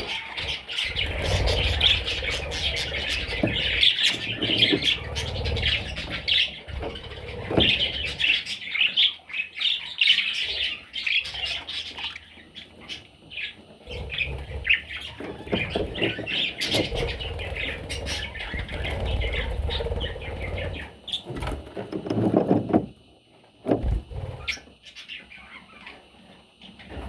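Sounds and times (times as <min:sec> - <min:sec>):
budgies chirping: 0:00.0 - 0:22.0, 0:23.8 - 0:27.0
low rumbling noise: 0:13.8 - 0:21.1.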